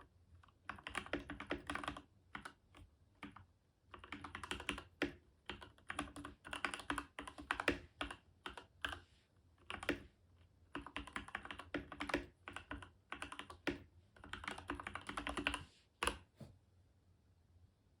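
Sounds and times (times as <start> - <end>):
mechanical keyboard typing: 0.4 - 9.0, 9.6 - 10.0, 10.7 - 16.2.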